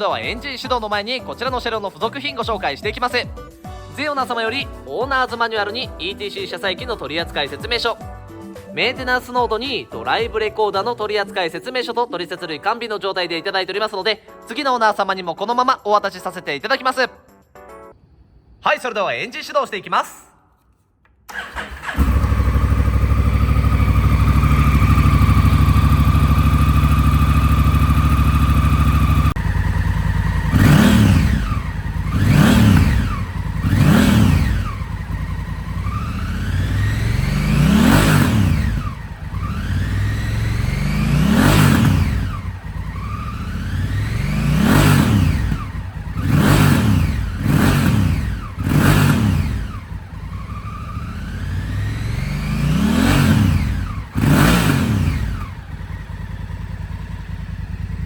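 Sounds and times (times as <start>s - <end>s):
motorcycle engine revving: 21.3s - 58.0s.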